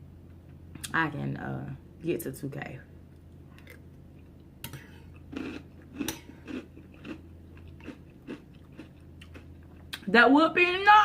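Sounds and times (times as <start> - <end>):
wet chewing and lip smacking: 5.1 - 10.1.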